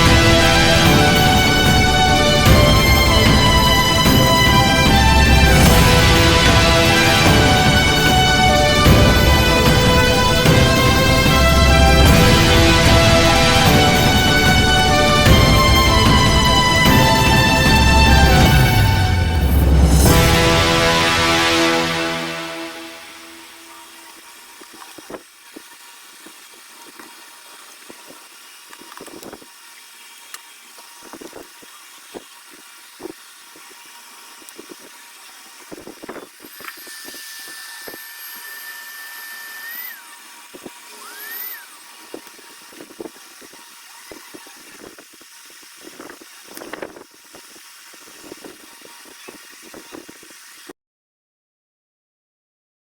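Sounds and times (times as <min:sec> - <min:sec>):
higher rising whine: 0:00.0 - 0:23.7, 0:36.5 - 0:41.9
small electric motor whining: 0:23.4 - 0:50.7.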